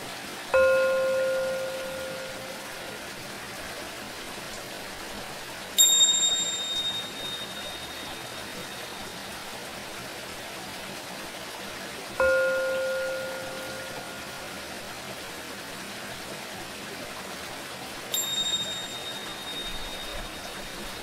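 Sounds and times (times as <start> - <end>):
running water: 0.0 - 21.0
small cymbals ringing: 0.5 - 3.1, 5.8 - 9.6, 12.2 - 15.0, 18.1 - 21.0.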